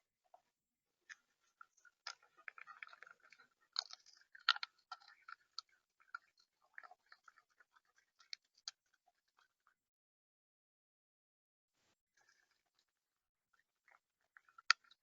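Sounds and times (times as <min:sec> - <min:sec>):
birds pecking and cracking seed: 0:01.1 - 0:09.8, 0:13.6 - 0:15.0.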